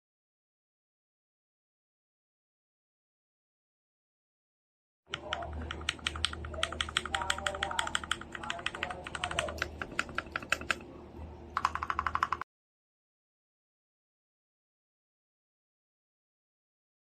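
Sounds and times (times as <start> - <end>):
mechanical keyboard typing: 5.1 - 10.8, 11.6 - 12.5
low steady hum: 5.1 - 12.4.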